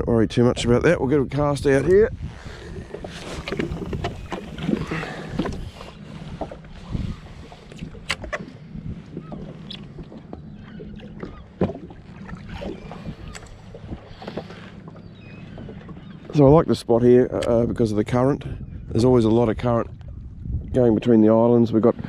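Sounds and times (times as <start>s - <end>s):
jet ski engine idling: 3.6s - 16.8s.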